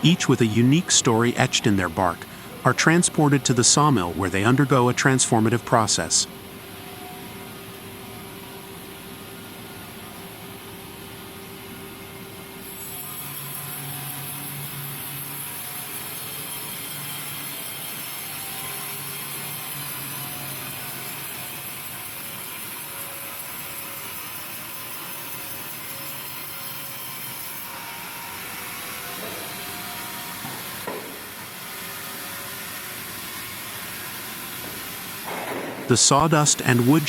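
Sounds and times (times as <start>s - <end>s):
low mechanical hum: 0.0s - 24.7s.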